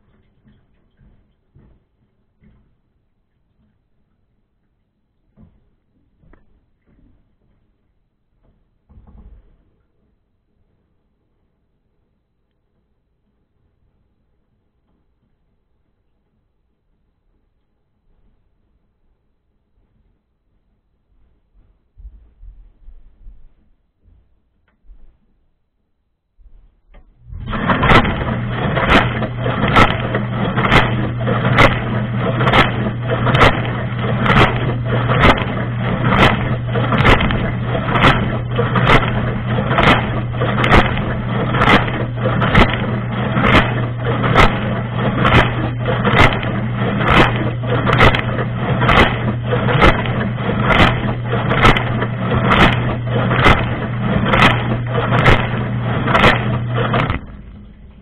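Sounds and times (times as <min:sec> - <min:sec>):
dishwasher pump humming: 0:27.0 - 0:58.0
pulsing water spray: 0:27.4 - 0:57.5.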